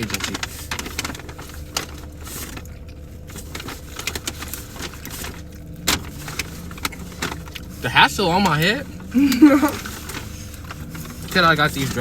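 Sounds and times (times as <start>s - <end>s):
rustling of handled objects: 0.0s - 12.0s
low hum: 0.1s - 12.0s.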